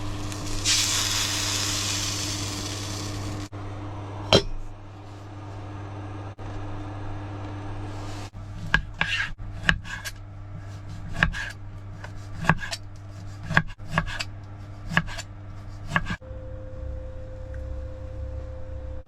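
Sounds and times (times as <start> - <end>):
steady low hum: 0.0 - 19.0
knife chopping on cutting board: 8.6 - 16.2.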